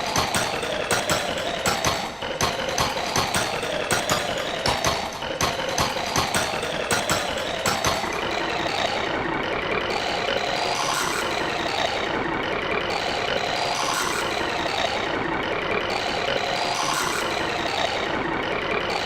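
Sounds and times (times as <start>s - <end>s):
remix beat of cartoon samples: 0.0s - 8.3s.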